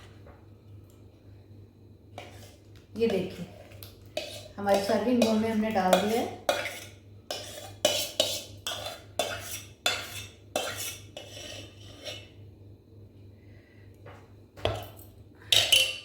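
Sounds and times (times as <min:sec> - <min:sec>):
steady low hum: 0:00.0 - 0:16.0
spoon scraping against a bowl: 0:02.2 - 0:12.4.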